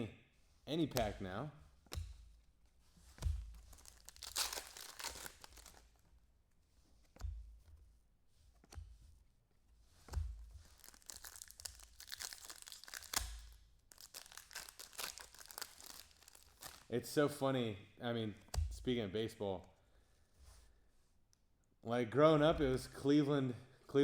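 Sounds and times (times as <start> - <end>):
cards being handled: 0.9 - 1.2, 3.0 - 5.9, 10.0 - 16.9
wrappers tearing and crinkling: 3.7 - 5.9, 10.7 - 16.9.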